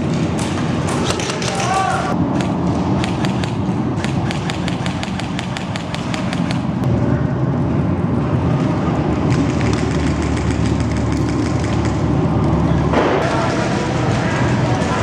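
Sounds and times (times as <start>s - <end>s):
airsoft gun firing full auto: 1.0s - 6.8s
steady low rumble: 2.1s - 15.0s.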